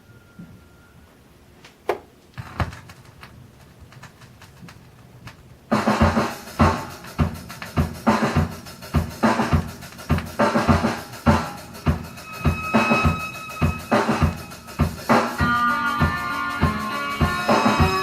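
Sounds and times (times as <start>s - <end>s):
drum-led music from a record: 5.7s - 18.0s
kick and snare drum beat: 5.7s - 18.0s.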